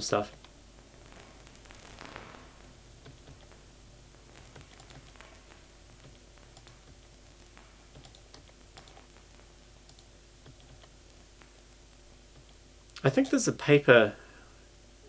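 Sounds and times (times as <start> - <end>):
low steady hum: 0.0 - 15.0
keyboard typing and clicking: 4.6 - 5.2, 6.0 - 7.0, 7.9 - 9.2, 9.8 - 11.0.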